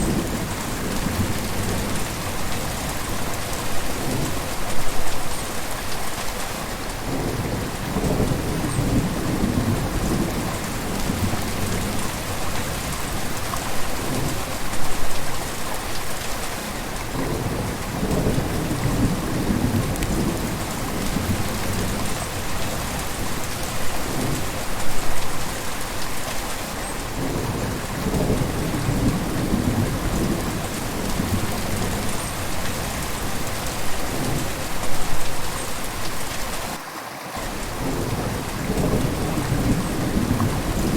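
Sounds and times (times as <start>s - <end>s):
river water rushing: 29.1s - 40.9s.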